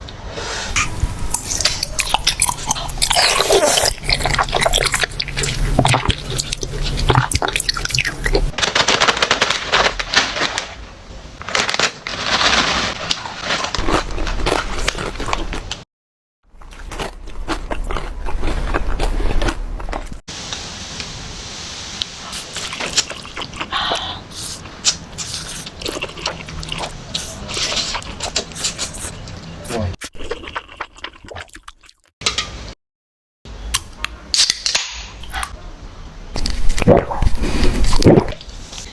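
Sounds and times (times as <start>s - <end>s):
wet slurp: 0.8s - 8.5s
person chewing crunchy food: 1.1s - 8.6s, 13.1s - 15.8s, 16.5s - 20.2s, 22.3s - 29.3s, 30.0s - 32.0s
small crunches: 11.4s - 15.8s, 16.6s - 20.2s.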